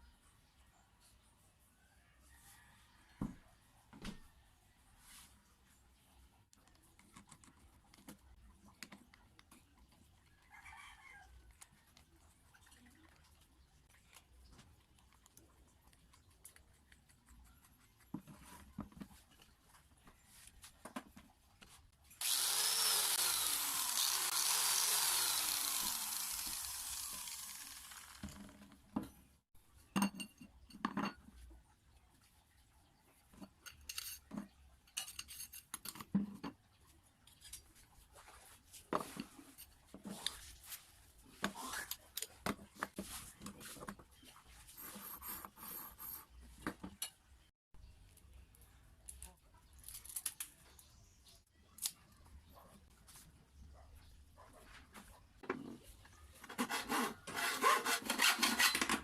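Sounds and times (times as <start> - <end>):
electric power tool running: 22.2 - 28.6.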